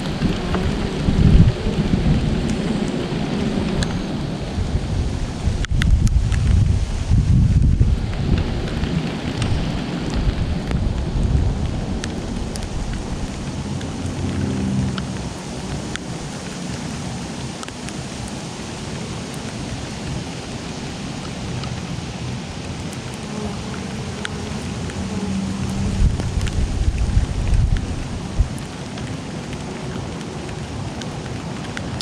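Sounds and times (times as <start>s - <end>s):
low rumble of thunder: 0.0s - 16.9s, 23.6s - 28.8s
steady rain with ticking drops: 0.0s - 32.0s.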